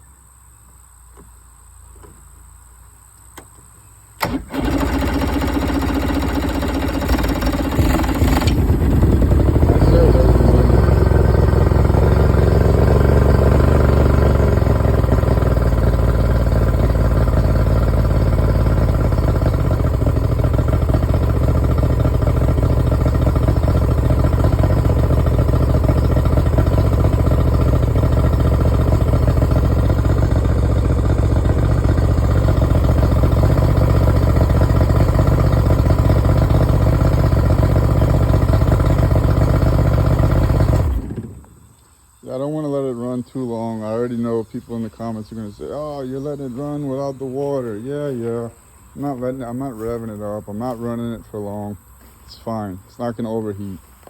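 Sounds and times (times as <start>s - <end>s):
electric starter cranking: 4.2s - 41.6s
outboard motor running: 4.2s - 41.6s.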